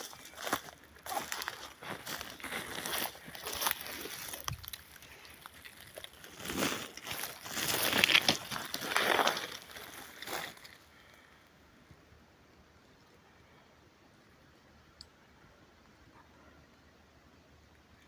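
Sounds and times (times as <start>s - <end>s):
dry material rustling and crackling: 0.0s - 10.9s.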